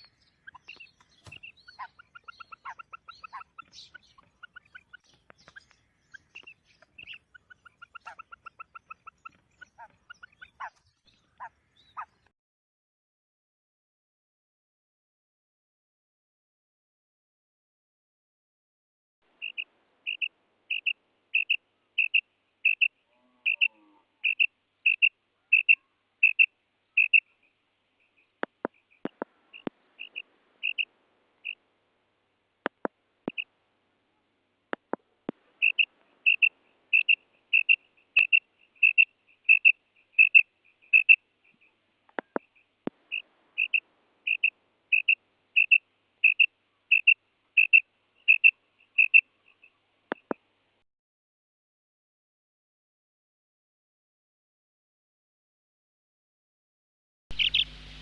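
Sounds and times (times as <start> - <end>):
faint clicks: 0.0 - 10.0, 28.2 - 31.6, 34.7 - 45.7, 50.1 - 50.5
quail calling: 0.0 - 12.3, 19.4 - 31.7, 32.6 - 33.5, 34.7 - 50.4, 57.3 - 58.0.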